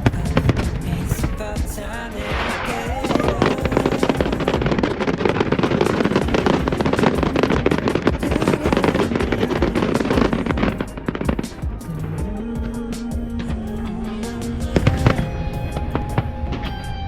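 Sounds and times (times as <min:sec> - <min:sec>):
fireworks bangs and crackles: 0:00.0 - 0:11.8
pop music: 0:00.0 - 0:17.0.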